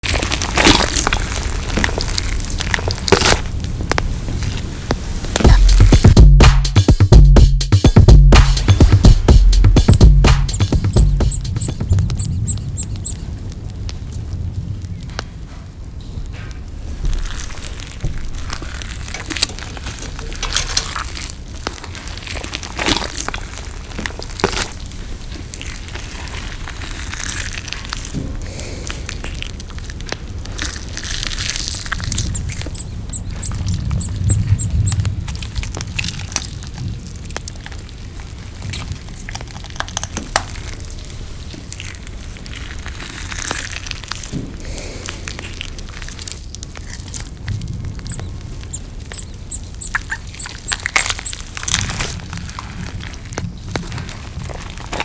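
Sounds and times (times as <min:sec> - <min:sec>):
chewing and crunching: 0:00.0 - 0:06.3, 0:08.0 - 0:55.0
mouth noises: 0:05.0 - 0:13.4.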